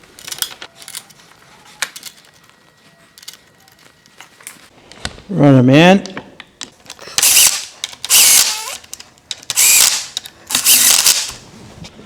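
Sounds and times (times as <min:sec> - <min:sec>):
power driver whining: 0:07.2 - 0:11.4.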